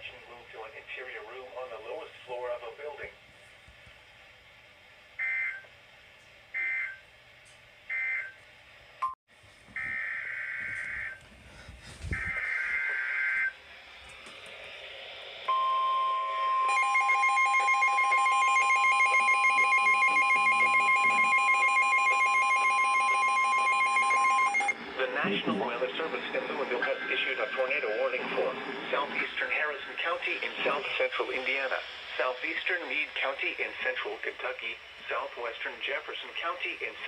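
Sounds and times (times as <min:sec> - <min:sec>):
steady warning alarm tone: 0:05.2 - 0:05.7, 0:06.5 - 0:07.0, 0:07.9 - 0:08.4, 0:09.7 - 0:11.4, 0:12.1 - 0:13.6, 0:15.4 - 0:31.7
electronic alarm beeping in pulses: 0:06.6 - 0:07.0, 0:07.9 - 0:08.4, 0:12.1 - 0:13.5, 0:15.5 - 0:24.8
radio data bursts: 0:12.1 - 0:13.6, 0:18.6 - 0:37.0.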